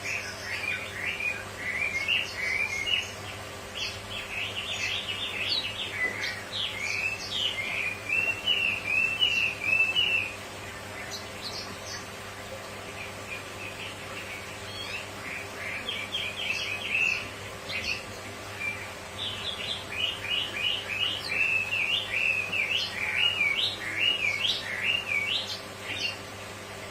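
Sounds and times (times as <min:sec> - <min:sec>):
bird chirping and whistling: 0:06.8 - 0:10.4, 0:20.0 - 0:25.4.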